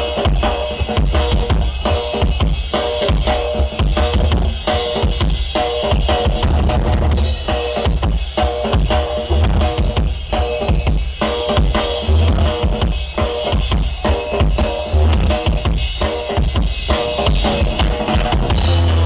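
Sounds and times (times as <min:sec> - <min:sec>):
drum kit: 0:00.0 - 0:19.0
heavy bass beat: 0:00.0 - 0:19.0
didgeridoo drone: 0:17.1 - 0:19.0.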